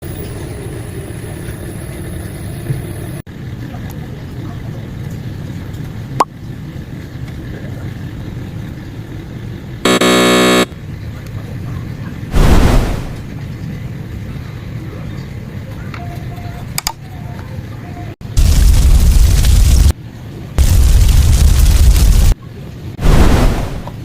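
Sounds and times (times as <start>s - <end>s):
steady background noise: 0.0s - 24.0s
loud burst of noise: 9.9s - 10.7s, 12.3s - 13.3s, 18.2s - 20.0s, 20.6s - 22.4s, 23.0s - 24.0s
buzzing honk: 9.9s - 10.8s.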